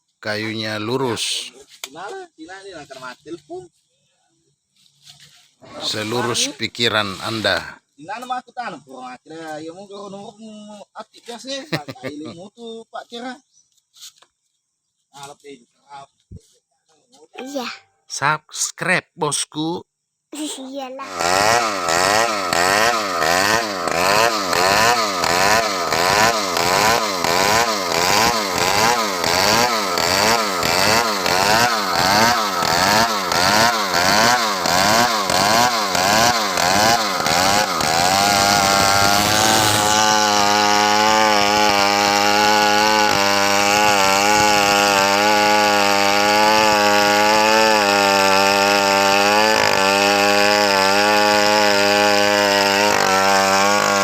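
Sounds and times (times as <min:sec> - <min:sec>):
chainsaw cutting log: 0:00.3 - 0:01.5, 0:05.6 - 0:07.8, 0:17.4 - 0:17.8, 0:20.4 - 0:54.0.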